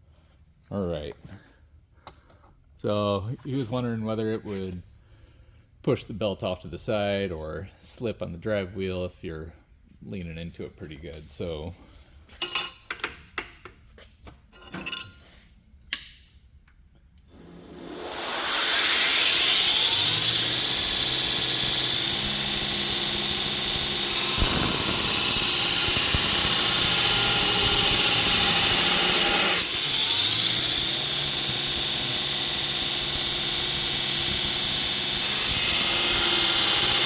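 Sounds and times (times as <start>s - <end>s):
motor hum: 17.3s - 37.0s
belt grinder grinding steel: 17.4s - 37.0s.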